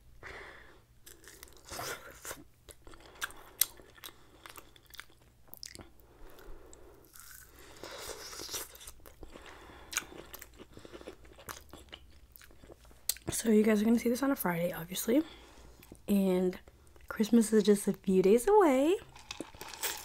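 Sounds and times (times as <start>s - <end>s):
biting and chewing food: 1.0s - 13.3s, 19.0s - 20.0s.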